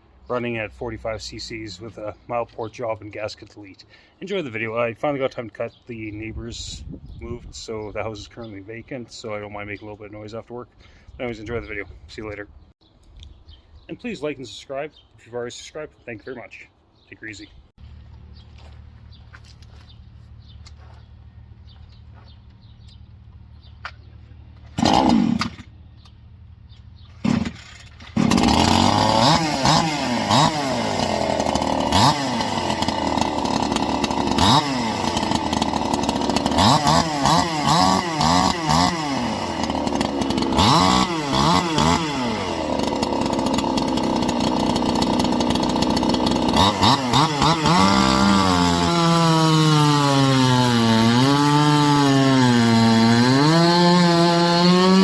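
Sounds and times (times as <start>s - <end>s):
chainsaw revving: 24.8s - 25.7s, 27.2s - 55.0s.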